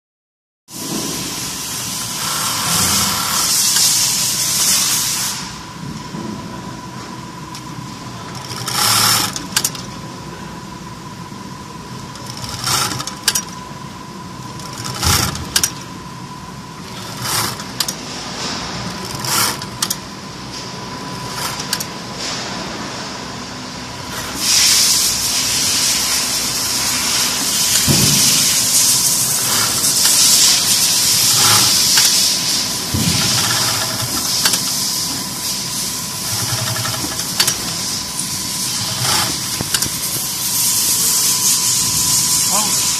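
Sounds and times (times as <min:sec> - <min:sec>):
sewing machine stitching: 0:08.1 - 0:10.0, 0:12.0 - 0:13.6, 0:14.5 - 0:15.9, 0:16.8 - 0:18.0, 0:18.8 - 0:20.0, 0:21.2 - 0:21.9, 0:27.6 - 0:35.3, 0:36.2 - 0:42.8.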